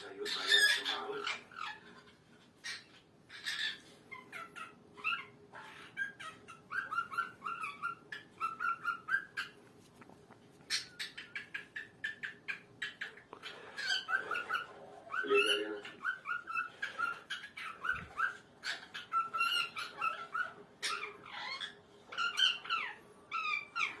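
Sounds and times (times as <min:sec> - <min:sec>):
parrot chirping and whistling: 0:02.7 - 0:09.6.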